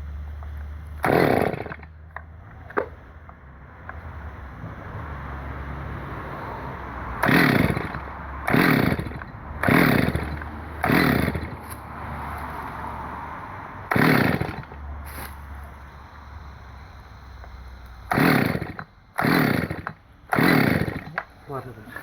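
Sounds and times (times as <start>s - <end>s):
chainsaw idling and revving: 0.0s - 2.0s, 6.8s - 13.0s, 13.8s - 15.5s, 18.0s - 22.0s.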